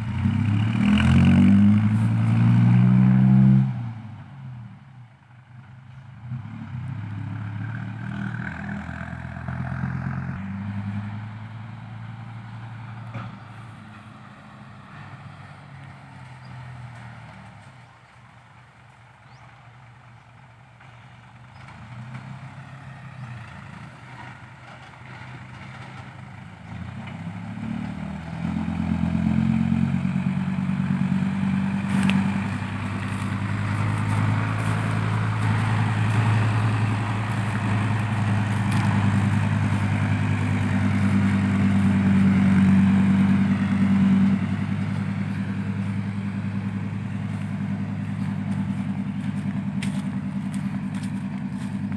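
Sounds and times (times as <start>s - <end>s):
heavy diesel engine running: 20.1s - 51.9s.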